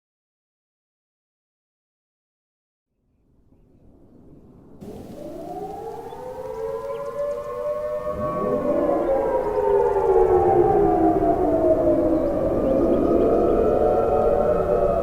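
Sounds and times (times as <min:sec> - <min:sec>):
civil defense siren winding up: 0:04.8 - 0:15.0.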